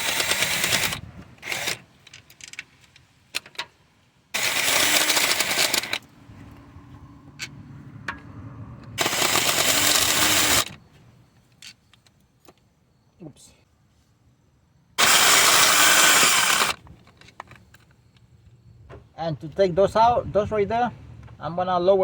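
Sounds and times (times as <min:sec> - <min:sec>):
cordless power tool spinning: 0:00.0 - 0:01.9, 0:04.4 - 0:06.1, 0:09.0 - 0:10.7, 0:15.0 - 0:16.8.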